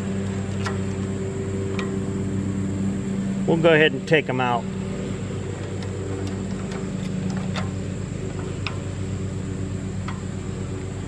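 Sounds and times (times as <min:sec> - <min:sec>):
motor droning: 0:00.0 - 0:11.0
light clicks of bolts: 0:00.2 - 0:01.1, 0:05.6 - 0:09.1.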